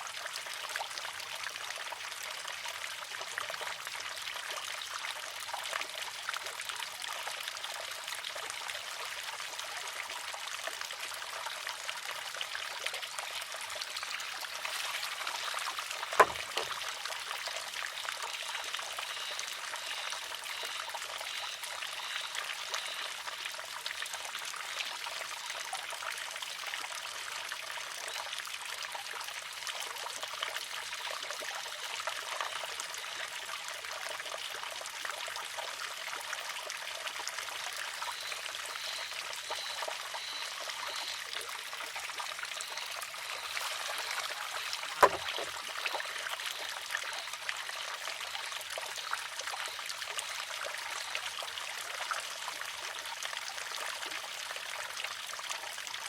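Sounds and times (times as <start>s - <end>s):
water trickling: 0.0s - 56.0s
bamboo arm clacking on rock: 14.9s - 16.9s, 43.5s - 46.1s.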